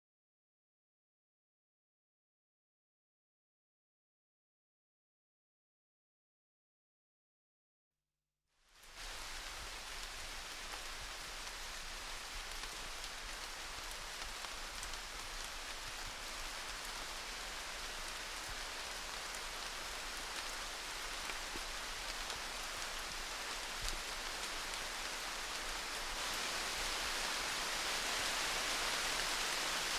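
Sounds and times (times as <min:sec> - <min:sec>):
steady rain hiss: 0:08.7 - 0:29.9
raindrops ticking on a surface: 0:08.8 - 0:29.9.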